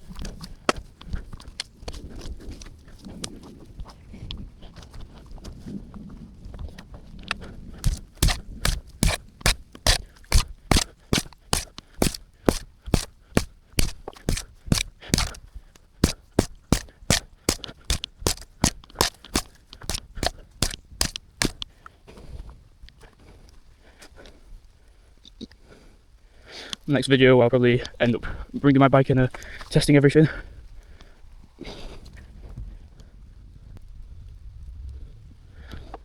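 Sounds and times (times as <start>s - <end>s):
shovel striking rocky dirt: 7.8s - 15.4s, 16.0s - 21.6s.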